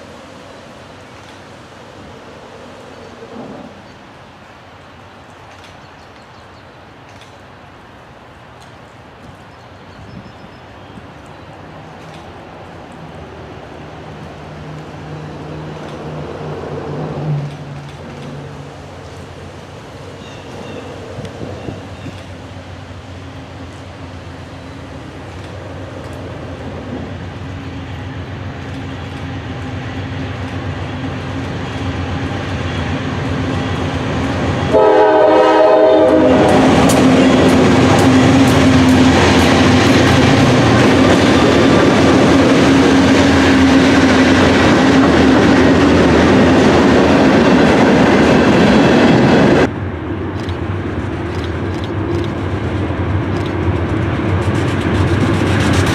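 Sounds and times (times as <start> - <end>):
diesel locomotive engine: 0.0 - 55.9
locomotive air horn blast: 34.7 - 37.5
wheels clattering on rail: 36.0 - 49.7.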